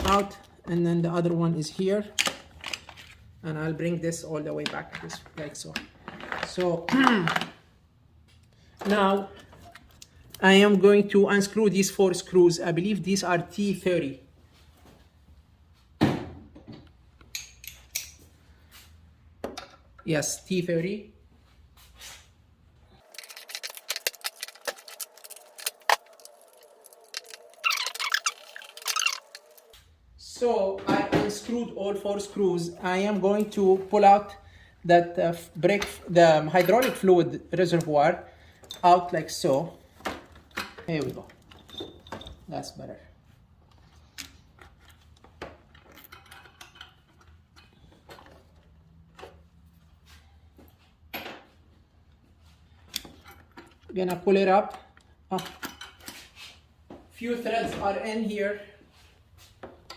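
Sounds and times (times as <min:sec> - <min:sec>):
hand tools clinking: 0:23.0 - 0:29.7.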